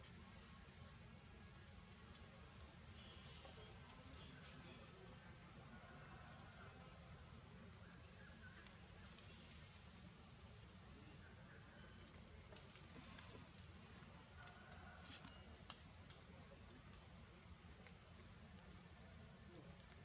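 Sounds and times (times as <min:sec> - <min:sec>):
insect chorus: 0:00.0 - 0:20.0
faint clicks: 0:14.4 - 0:16.2.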